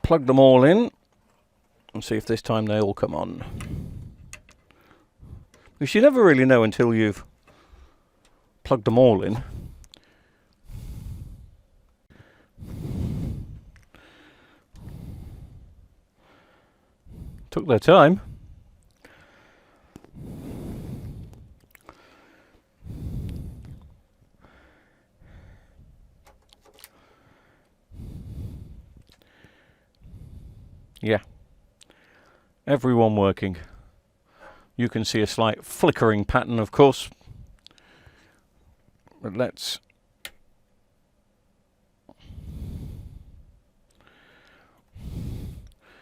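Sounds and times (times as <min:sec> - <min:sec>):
man breathing: 0:03.4 - 0:05.8, 0:07.2 - 0:08.6, 0:09.4 - 0:17.6, 0:18.2 - 0:26.2, 0:26.8 - 0:31.0, 0:31.8 - 0:32.6, 0:33.6 - 0:34.8, 0:37.1 - 0:38.6, 0:42.1 - 0:46.0.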